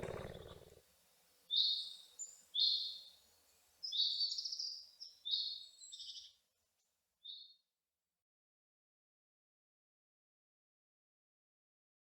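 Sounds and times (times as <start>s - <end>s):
cheetah chirping: 0.0s - 0.7s.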